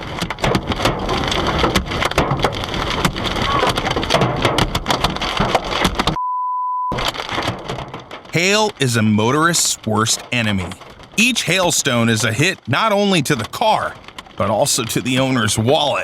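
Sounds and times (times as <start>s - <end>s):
rapid clatter of small impacts: 0.0s - 6.2s, 7.0s - 8.4s, 10.6s - 12.7s, 13.3s - 15.2s
bleep tone: 6.2s - 7.0s.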